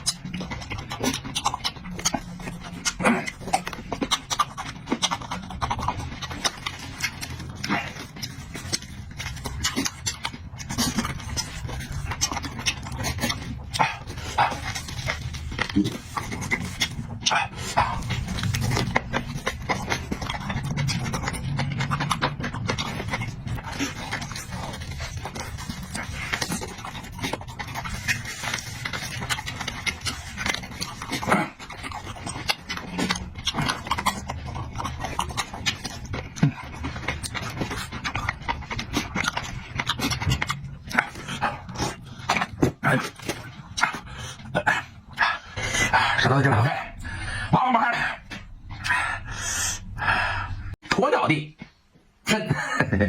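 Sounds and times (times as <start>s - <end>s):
person chewing meat: 0.0s - 47.5s.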